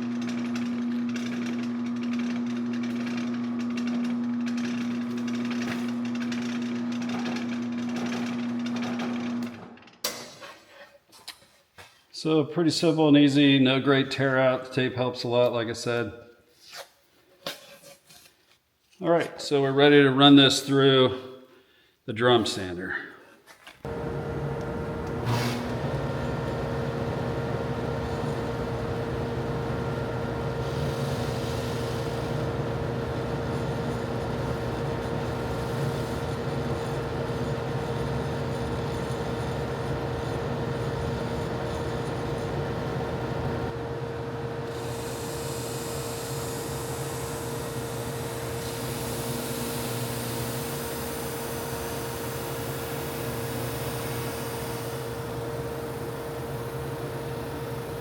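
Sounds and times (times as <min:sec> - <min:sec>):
drum sander motor hum and whine: 0:23.9 - 0:58.0.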